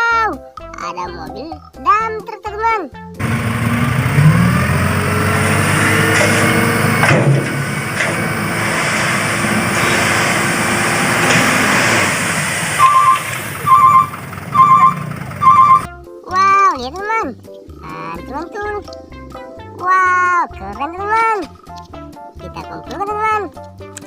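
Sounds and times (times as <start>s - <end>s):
truck engine rumbling: 3.2s - 15.9s
truck reversing alarm beeping: 3.2s - 15.9s.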